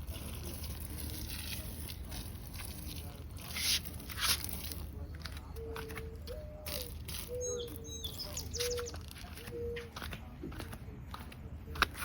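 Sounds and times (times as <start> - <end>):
dove cooing: 5.6 - 9.9
faint bird chirps: 5.6 - 10.0.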